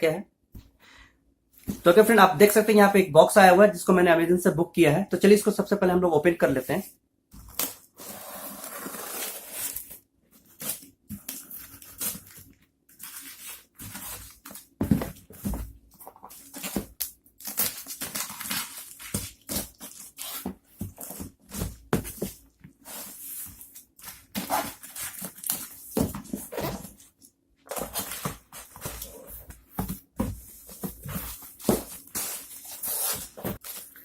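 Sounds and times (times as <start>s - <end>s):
cardboard and packing rustling: 7.4s - 34.0s.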